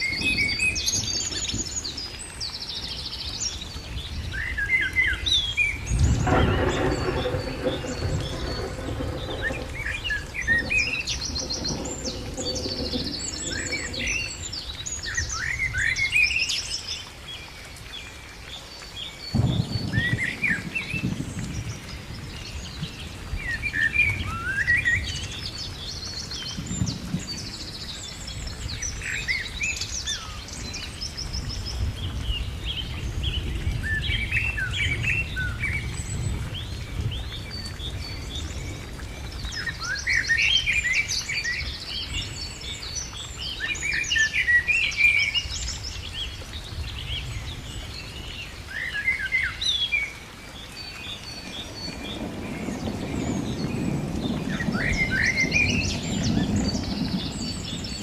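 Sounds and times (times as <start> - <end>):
many birds chirping and singing: 0.0 - 58.0
steady low rumble: 5.8 - 14.8.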